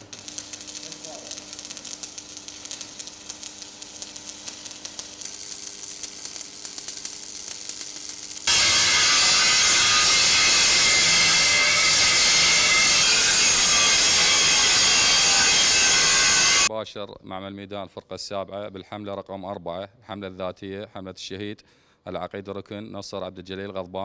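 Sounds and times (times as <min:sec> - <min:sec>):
power tool running: 0:08.4 - 0:16.7.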